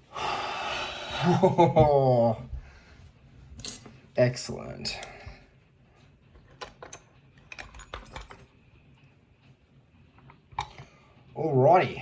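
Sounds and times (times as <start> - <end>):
light metallic clicks and clinks: 3.6 - 4.0, 6.4 - 8.5.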